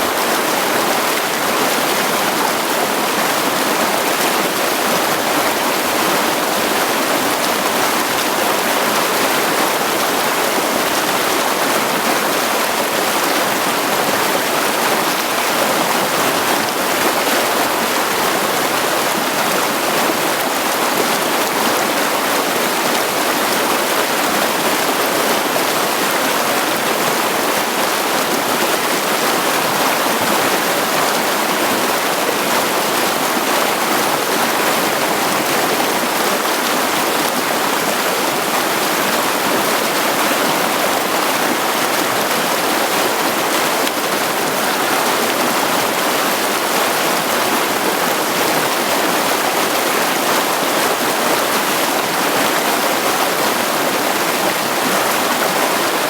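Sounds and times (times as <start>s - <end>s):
stream running over rocks: 0.0s - 56.0s.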